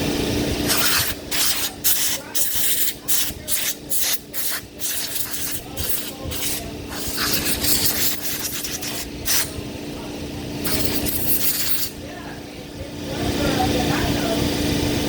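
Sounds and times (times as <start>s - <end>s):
short hissing bursts: 0.7s - 9.5s, 10.6s - 12.0s.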